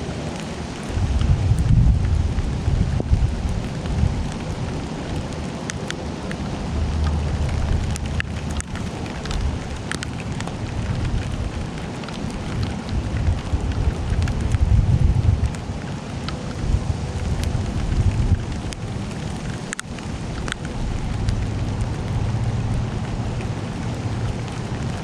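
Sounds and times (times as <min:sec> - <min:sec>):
low uneven rumble: 0:00.0 - 0:25.0
rain drops ticking: 0:00.0 - 0:25.0.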